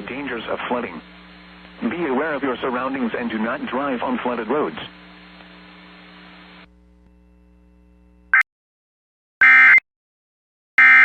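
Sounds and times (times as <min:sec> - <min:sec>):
faint hiss and hum: 0:00.0 - 0:08.3.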